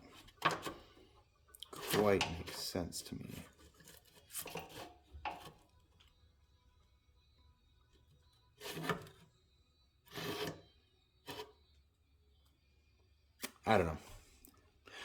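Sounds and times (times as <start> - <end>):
scraping rustling handling noises: 1.8 - 5.6.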